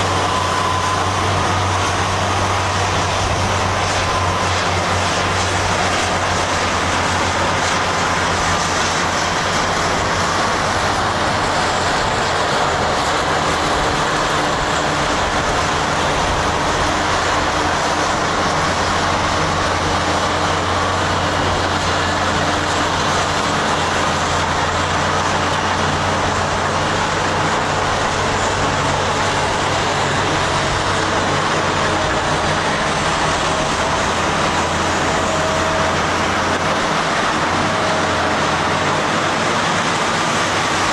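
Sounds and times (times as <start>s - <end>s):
diesel engines droning: 0.0s - 40.9s.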